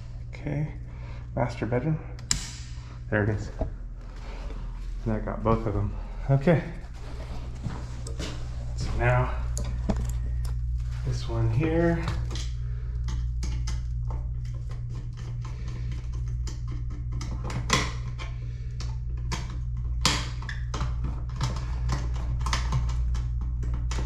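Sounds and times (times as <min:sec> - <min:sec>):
low hum: 0:00.0 - 0:24.0
light switch clicks: 0:02.2 - 0:02.7.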